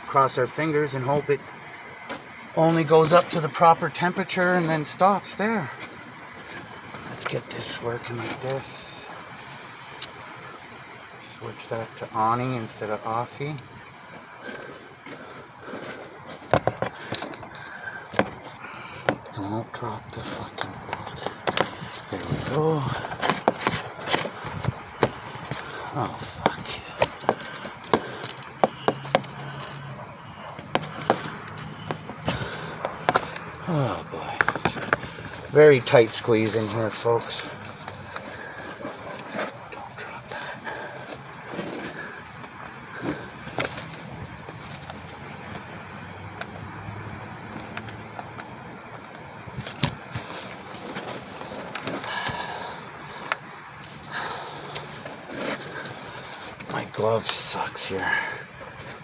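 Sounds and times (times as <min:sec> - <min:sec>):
tools and bolts clinking: 0:20.1 - 0:33.7.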